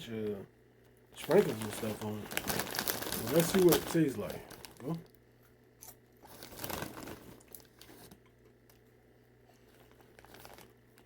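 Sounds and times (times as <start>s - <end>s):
popcorn bag rustling: 1.2s - 5.2s, 6.2s - 8.2s, 9.6s - 11.0s
small crackles: 1.2s - 5.2s, 5.8s - 8.9s, 9.6s - 11.0s.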